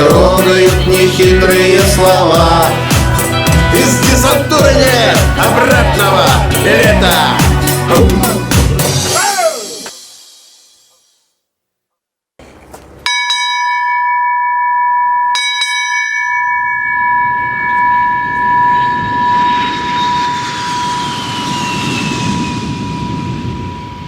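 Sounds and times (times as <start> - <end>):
bell ringing: 13.0 - 21.9
rushing noise with falling whine: 17.4 - 24.0.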